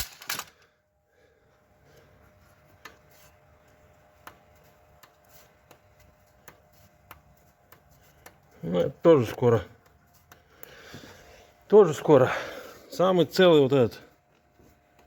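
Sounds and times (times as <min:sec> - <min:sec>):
light clicks and taps: 0:02.7 - 0:10.8.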